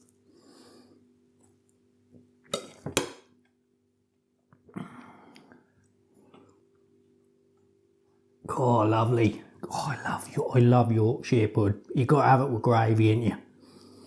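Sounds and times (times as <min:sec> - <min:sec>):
faint steady hum: 0:00.0 - 0:14.0
cutlery clinking on plate: 0:02.5 - 0:03.2.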